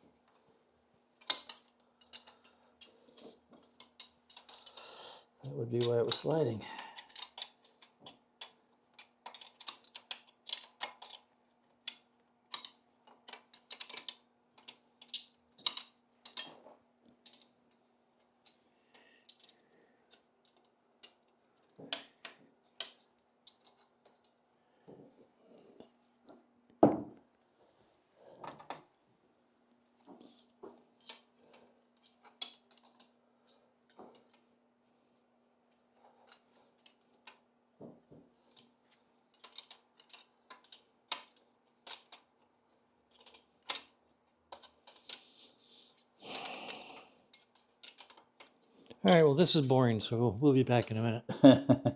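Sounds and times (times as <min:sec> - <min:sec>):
small metal parts clinking: 0:01.2 - 0:02.5, 0:03.8 - 0:04.8, 0:05.8 - 0:16.6, 0:19.2 - 0:24.4, 0:39.3 - 0:42.4, 0:43.1 - 0:45.4, 0:47.3 - 0:49.7.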